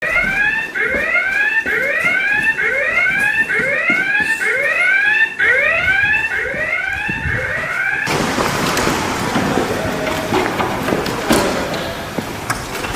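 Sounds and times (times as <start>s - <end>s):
whooping alarm siren: 0.0s - 10.1s
loud even rushing noise: 8.1s - 12.2s.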